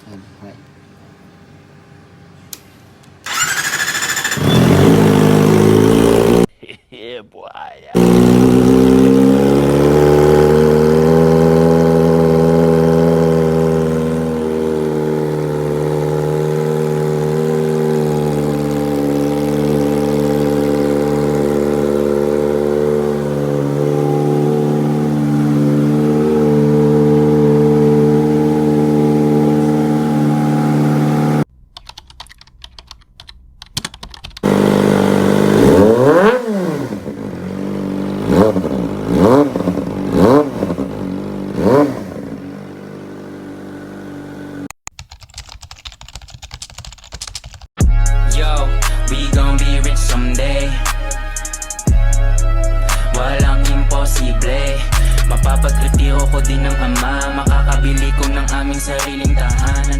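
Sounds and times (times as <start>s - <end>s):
motorcycle engine revving: 3.2s - 6.5s, 8.0s - 31.5s, 34.4s - 44.7s, 48.4s - 59.9s
motorcycle engine idling: 8.0s - 31.4s, 34.4s - 36.0s, 37.0s - 44.7s.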